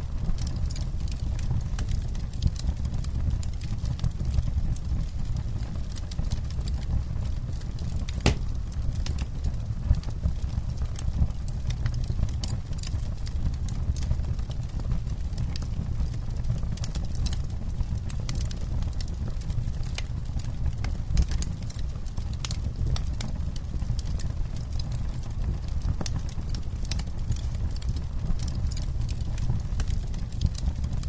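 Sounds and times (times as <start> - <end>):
campfire crackling and popping: 0.0 - 31.0
low fire rumble: 0.0 - 31.0.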